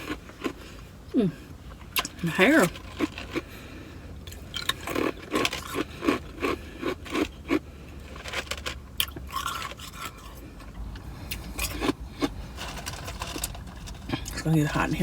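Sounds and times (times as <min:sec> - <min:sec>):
ice crunched between teeth: 0:02.0 - 0:03.5, 0:04.3 - 0:10.4.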